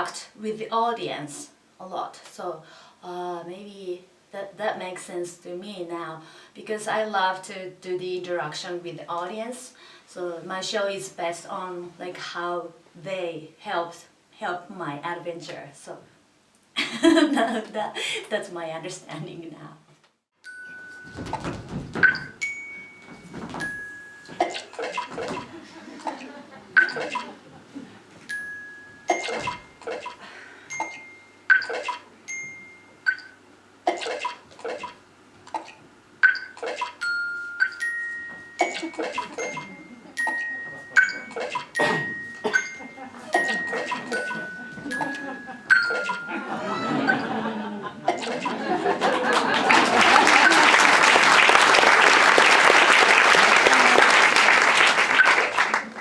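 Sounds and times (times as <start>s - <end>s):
bell-like chime tones: 20.4s - 21.2s, 30.7s - 31.5s, 32.3s - 33.0s, 37.0s - 46.6s
audience applauding: 48.7s - 56.0s.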